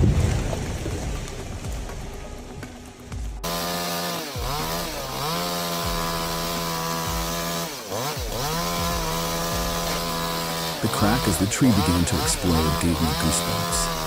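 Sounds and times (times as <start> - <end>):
chainsaw running at high revs: 3.4 - 14.0.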